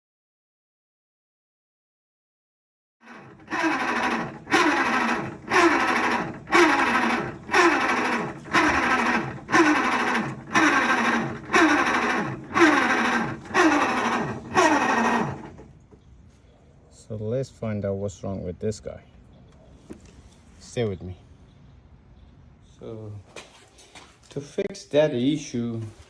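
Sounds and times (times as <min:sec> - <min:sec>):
washing machine running: 0:03.0 - 0:15.9.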